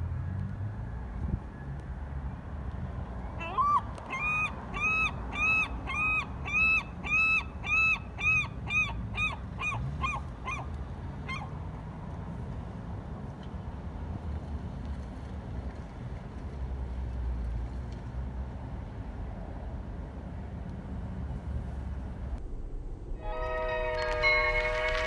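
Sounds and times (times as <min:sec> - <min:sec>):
distant traffic: 0:00.0 - 0:22.4
waterbird honking: 0:03.4 - 0:11.8.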